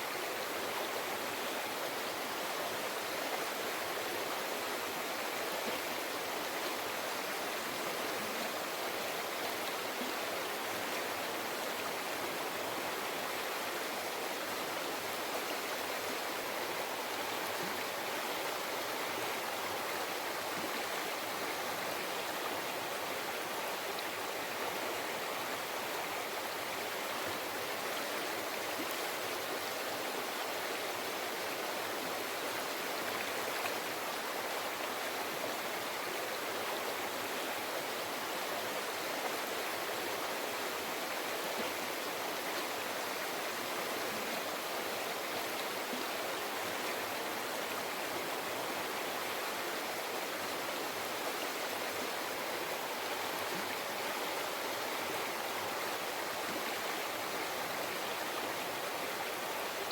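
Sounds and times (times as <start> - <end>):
river flowing over rocks: 0.0 - 59.9.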